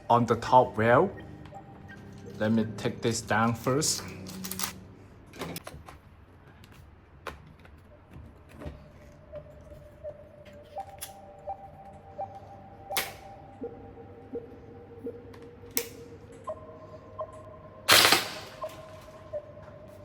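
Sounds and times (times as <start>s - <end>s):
faint steady tone: 8.5s - 20.0s.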